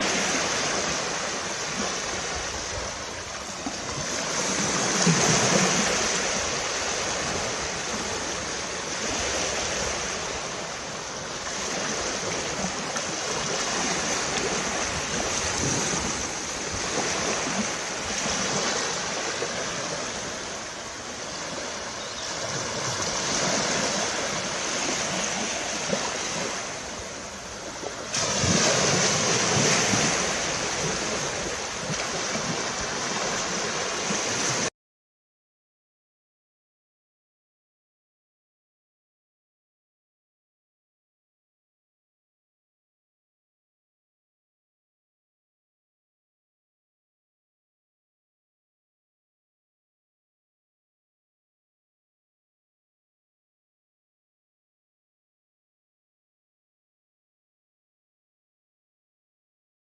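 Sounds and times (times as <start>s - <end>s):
ocean surf washing onto beach: 0.0s - 34.7s.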